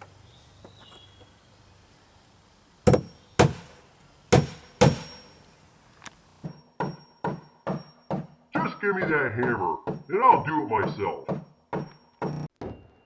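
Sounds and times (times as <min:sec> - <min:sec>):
hammer striking nails into wood: 0:02.9 - 0:05.4, 0:06.4 - 0:12.5.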